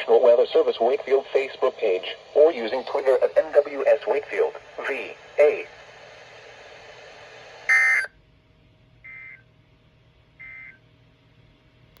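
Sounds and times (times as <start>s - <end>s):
steady hiss: 0.0s - 8.1s
two-tone digital chirps: 7.7s - 8.1s.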